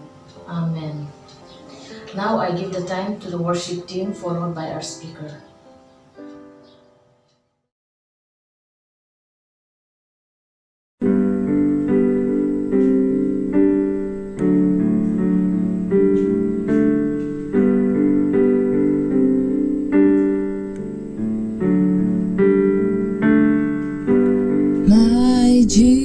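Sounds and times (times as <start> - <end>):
piano chords: 0.0 - 7.7, 11.0 - 26.0.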